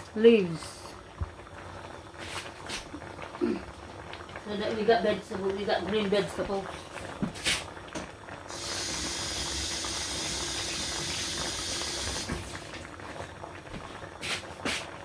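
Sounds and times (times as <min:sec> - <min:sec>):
watery hiss of liquid: 0:08.5 - 0:12.3.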